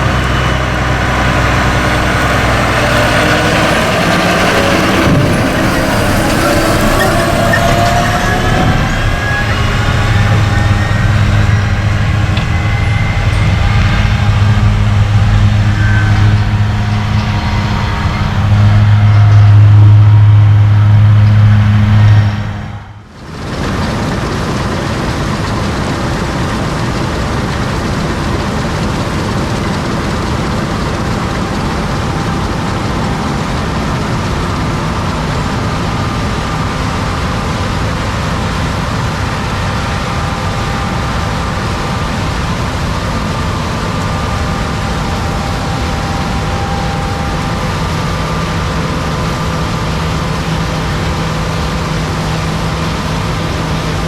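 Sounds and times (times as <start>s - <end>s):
deep engine hum: 0.0s - 54.0s
steady machine noise: 0.0s - 54.0s.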